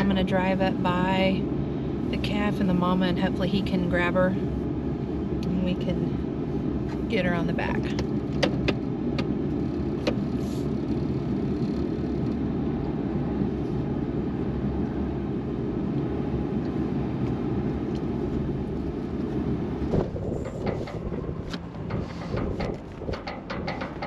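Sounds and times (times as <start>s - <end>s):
truck engine and tyre rumble: 0.0s - 24.0s
knocks: 20.0s - 24.0s.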